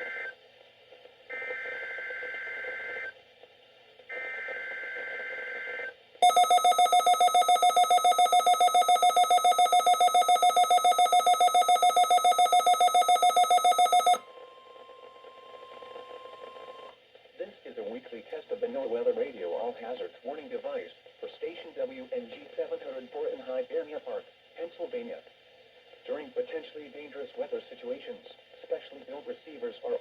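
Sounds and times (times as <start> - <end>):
rapid electronic alarm beeps: 6.2 - 14.2
steady alert tone: 6.2 - 14.2.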